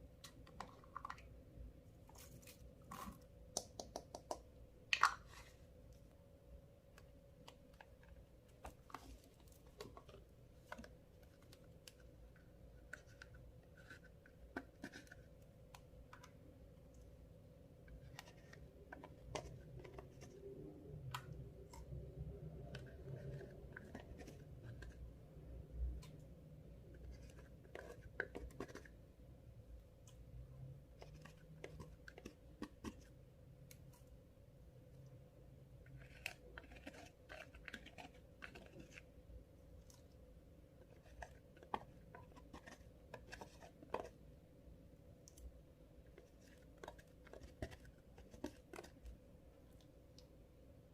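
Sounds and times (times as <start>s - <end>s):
faint steady hum: 0.0s - 50.9s.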